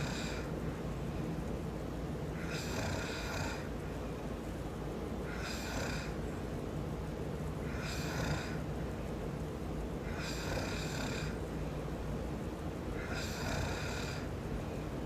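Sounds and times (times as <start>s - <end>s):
man snoring: 0.0s - 0.5s, 2.4s - 3.7s, 5.3s - 6.2s, 7.7s - 8.6s, 10.0s - 11.4s, 13.0s - 14.3s
steady low rumble: 0.0s - 15.0s.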